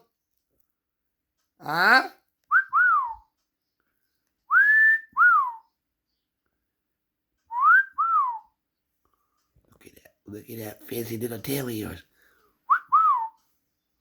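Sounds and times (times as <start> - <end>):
person whistling: 2.5 - 3.3, 4.5 - 5.7, 7.5 - 8.6, 12.7 - 13.4.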